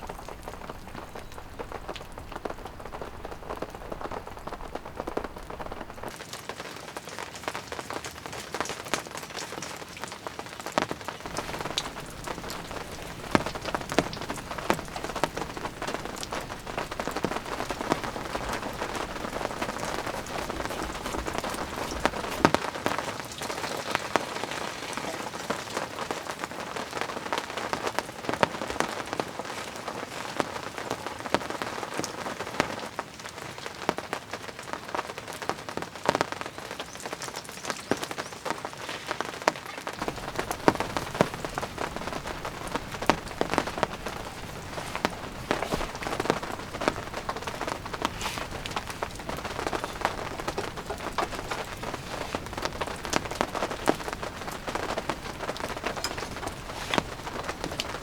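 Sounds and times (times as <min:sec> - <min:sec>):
sharp raindrop hits: 0:00.0 - 0:06.1, 0:11.2 - 0:24.6, 0:40.0 - 0:58.0
steady rain falling: 0:00.0 - 0:58.0.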